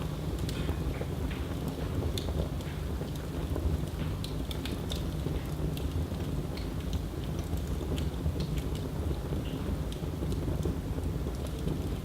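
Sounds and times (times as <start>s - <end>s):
low rumble of flames: 0.0s - 12.0s
wood crackling and popping: 0.0s - 12.0s.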